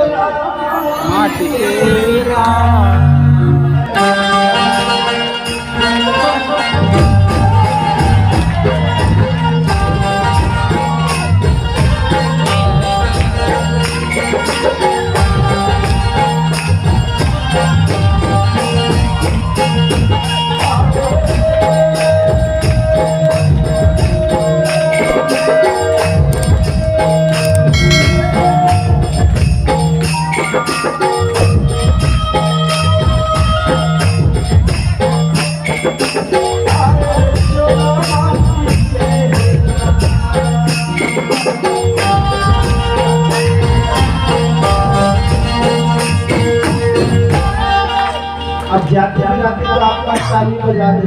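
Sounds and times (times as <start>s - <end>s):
jingling percussion: 0.6s - 2.9s, 5.3s - 48.4s
long held melody notes: 27.7s - 29.8s.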